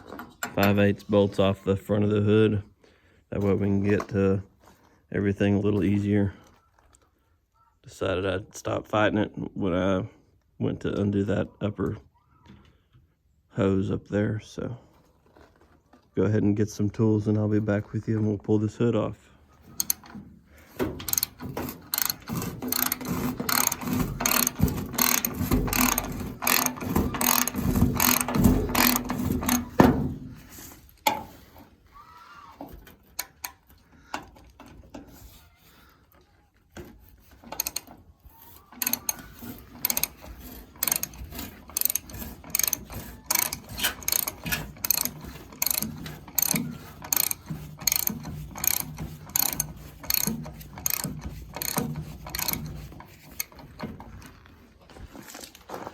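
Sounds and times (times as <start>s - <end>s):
ratchet wrench clicking: 19.8s - 20.1s, 21.0s - 29.8s, 37.5s - 37.9s, 38.8s - 53.8s.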